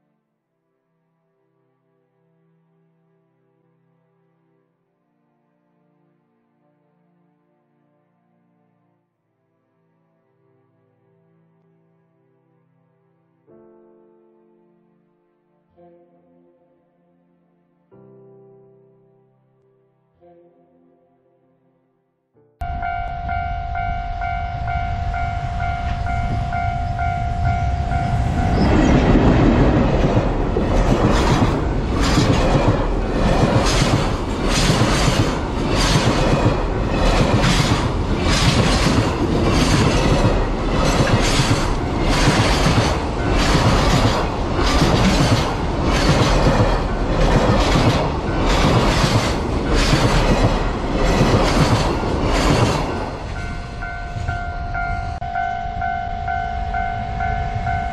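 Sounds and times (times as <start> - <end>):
level-crossing warning bell: 22.6 - 29.3, 39.2 - 45.3, 52.8 - 57.9
freight train rumbling: 22.6 - 57.9
train wheels clattering over rail joints: 29.0 - 53.2.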